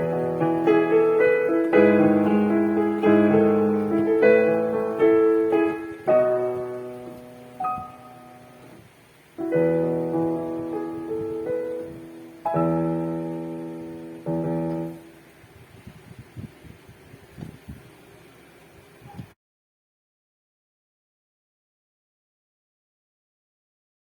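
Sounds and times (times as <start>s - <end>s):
keyboard playing piano chords: 0.0s - 15.3s.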